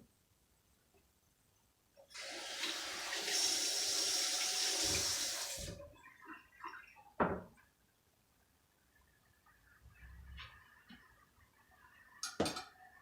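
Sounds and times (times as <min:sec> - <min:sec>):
kitchen tap running: 0:02.1 - 0:05.9.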